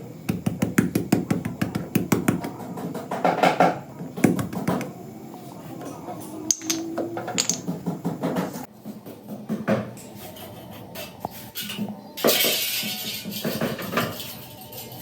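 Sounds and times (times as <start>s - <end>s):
metal tools clinking: 6.5s - 7.7s.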